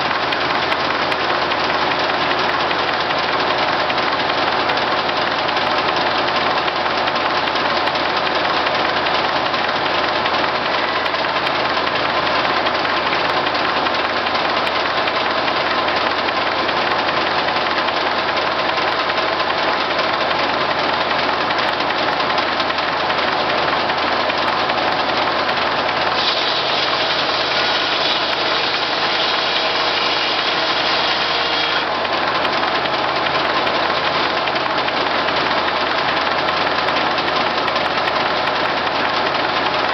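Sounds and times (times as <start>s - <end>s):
engine running a sawmill: 0.0s - 39.9s
high-pitched saw noise: 26.1s - 31.9s.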